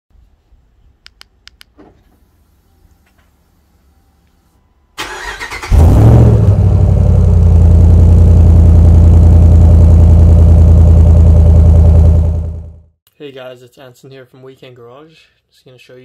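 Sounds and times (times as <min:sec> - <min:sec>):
engine starter cranking: 0:05.0 - 0:06.0
engine idling loudly: 0:07.0 - 0:12.8.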